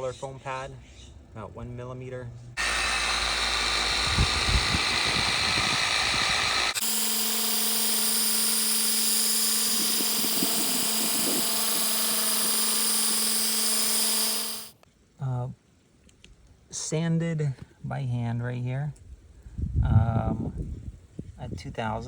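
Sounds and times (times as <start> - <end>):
power sander running: 2.6 - 14.8.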